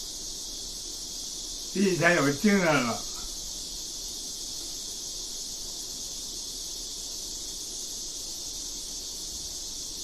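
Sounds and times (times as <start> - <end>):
high-pitched hiss: 0.0 - 10.0
faint low hum: 1.2 - 4.8.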